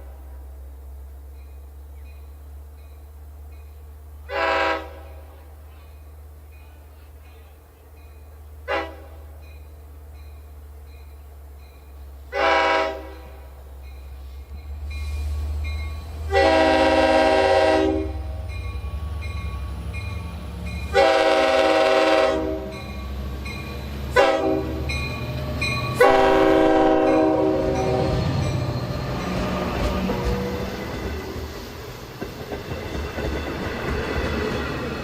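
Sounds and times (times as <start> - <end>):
low locomotive rumble: 0.0 - 35.0
locomotive air horn: 4.2 - 5.5, 8.6 - 9.4, 12.3 - 13.6, 16.2 - 18.5, 20.9 - 22.8, 24.1 - 24.9, 26.0 - 28.3.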